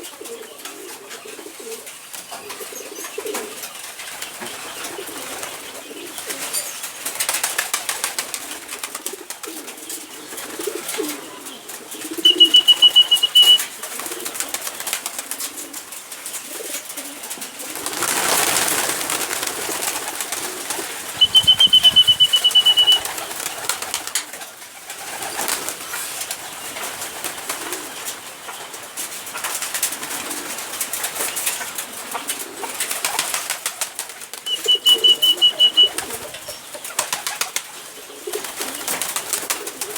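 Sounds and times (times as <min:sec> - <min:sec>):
poultry low calls: 0:11.1 - 0:13.7, 0:20.4 - 0:23.9, 0:34.5 - 0:36.4
short high trills: 0:12.3 - 0:13.7, 0:21.2 - 0:23.1.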